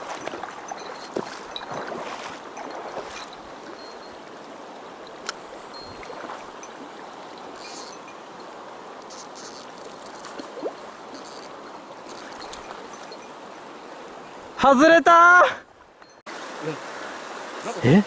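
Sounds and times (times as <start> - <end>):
mountain stream rushing: 0.0 - 18.0
faint rustles and knocks: 7.4 - 13.7.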